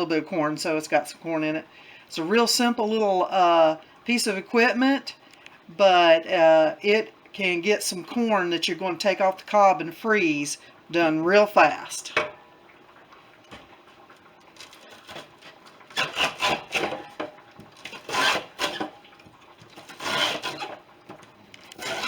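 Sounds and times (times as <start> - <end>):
corn scraped along cutter blades: 17.9 - 18.9, 19.9 - 20.8, 21.7 - 22.0.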